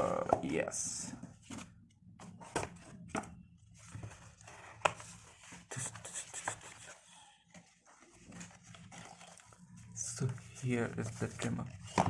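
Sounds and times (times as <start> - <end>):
packaging rustling and scraping: 6.5 - 12.0.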